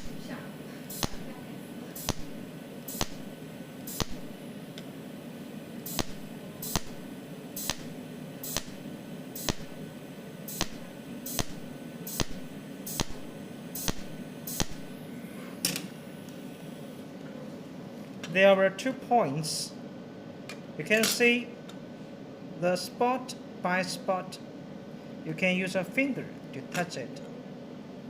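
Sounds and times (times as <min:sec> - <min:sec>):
steady low hum: 0:00.0 - 0:28.0
welding snaps: 0:00.9 - 0:04.9, 0:05.8 - 0:09.9, 0:10.5 - 0:15.0.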